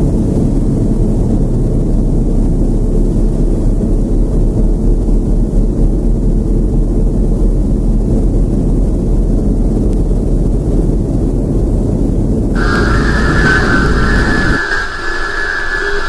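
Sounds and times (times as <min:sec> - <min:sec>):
low rumbling ambient drone: 0:00.0 - 0:16.0
higher sustained tone: 0:12.6 - 0:16.0.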